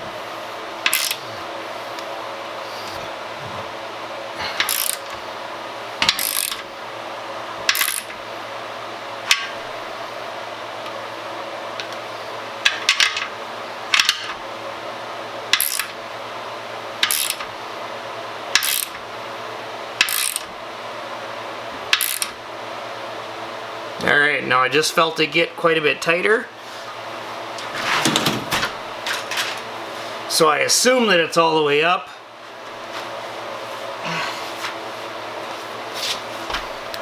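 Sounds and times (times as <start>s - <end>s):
ratchet wrench clicking: 0.8s - 1.2s, 4.6s - 5.1s, 6.1s - 6.6s, 7.7s - 8.1s, 15.6s - 15.9s, 17.0s - 17.4s, 18.6s - 19.0s, 20.0s - 20.5s, 21.9s - 22.3s.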